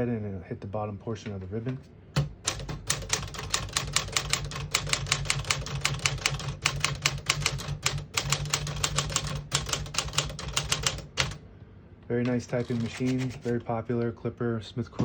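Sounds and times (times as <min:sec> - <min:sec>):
manual typewriter clacking: 0:02.2 - 0:11.4, 0:12.3 - 0:13.6.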